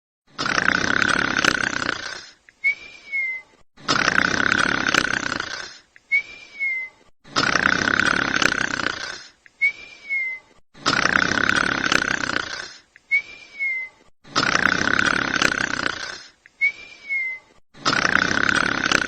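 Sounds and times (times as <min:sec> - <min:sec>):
dog snoring: 0:00.3 - 0:02.4, 0:03.8 - 0:05.9, 0:07.2 - 0:09.4, 0:10.8 - 0:12.9, 0:14.2 - 0:16.4, 0:17.7 - 0:19.0.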